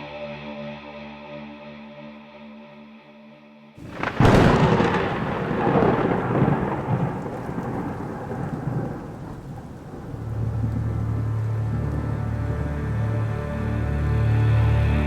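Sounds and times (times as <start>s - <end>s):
low musical drone: 0.0s - 3.7s, 10.1s - 15.0s
thunder crack and rumble: 3.8s - 13.0s
rain hissing: 3.8s - 15.0s.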